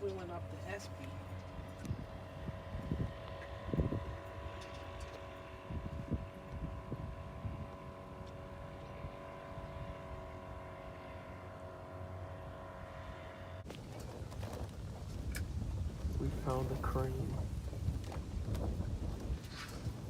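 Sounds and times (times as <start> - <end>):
boat motor running: 0.0 - 20.0.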